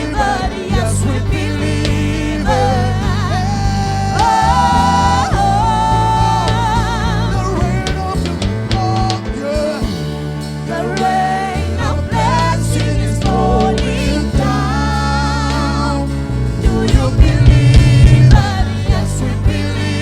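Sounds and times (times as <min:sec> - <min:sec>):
bass line: 0:00.0 - 0:20.0
drums: 0:00.0 - 0:20.0
person singing with vibrato: 0:00.0 - 0:20.0.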